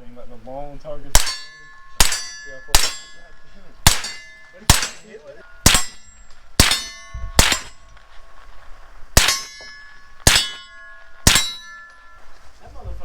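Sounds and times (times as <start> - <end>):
gunshots: 1.2 - 3.2, 3.8 - 7.8, 9.2 - 9.6, 10.2 - 11.7
short metallic ring: 1.2 - 8.0, 9.2 - 12.4.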